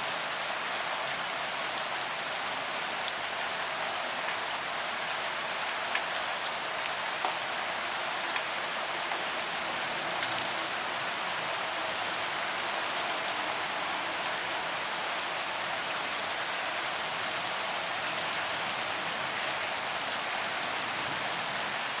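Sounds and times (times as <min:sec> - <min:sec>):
heavy rain hissing: 0:04.8 - 0:22.0.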